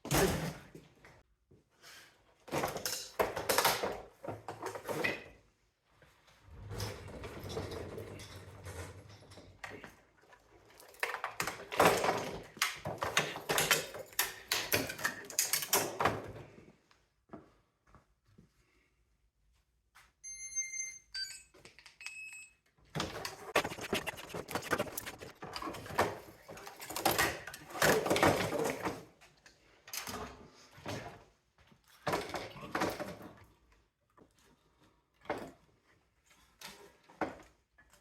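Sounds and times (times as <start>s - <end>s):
plastic and metal parts clattering: 2.5s - 5.4s, 6.6s - 16.4s, 23.0s - 29.2s
rubbing noise: 23.2s - 25.8s.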